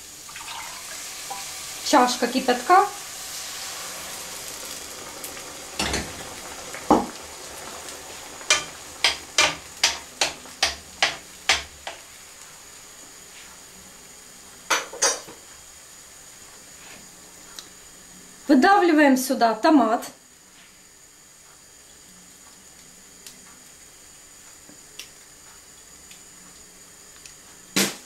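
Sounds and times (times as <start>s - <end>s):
faint sizzle: 0.0s - 28.0s
utensil knocking against frying pan: 8.5s - 12.0s.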